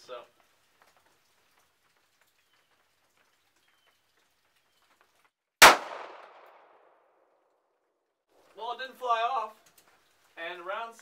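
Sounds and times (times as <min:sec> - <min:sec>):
pistol shot with echo: 0:05.6 - 0:07.0.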